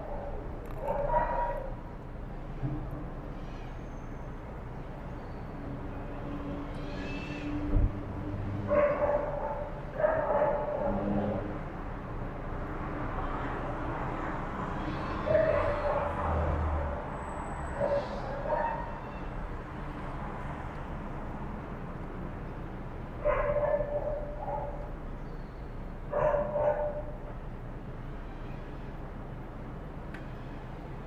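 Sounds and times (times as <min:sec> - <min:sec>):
dogs barking: 0:00.0 - 0:01.8, 0:08.6 - 0:11.2, 0:15.2 - 0:17.1, 0:17.7 - 0:19.1, 0:23.2 - 0:24.9, 0:26.1 - 0:27.3.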